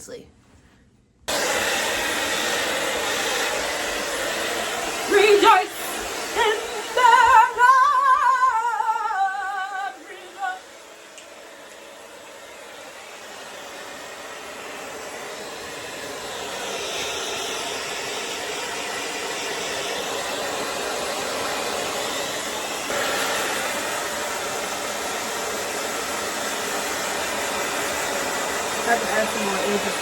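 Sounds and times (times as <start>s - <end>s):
hair dryer blowing: 1.3s - 30.0s.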